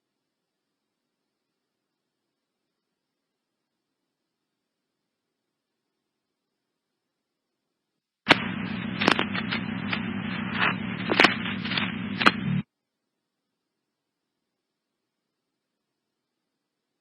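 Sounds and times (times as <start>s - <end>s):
radio crackling pops: 8.3s - 12.7s
radio static hiss and hum: 8.3s - 12.7s.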